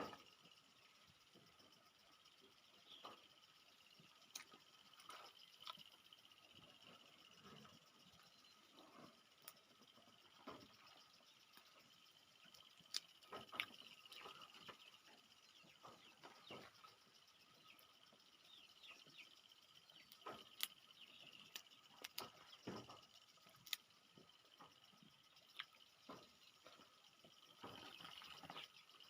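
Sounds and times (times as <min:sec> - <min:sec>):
peanuts being shelled and chewed: 0:04.2 - 0:08.3, 0:12.4 - 0:15.2, 0:19.9 - 0:24.3, 0:25.4 - 0:26.9.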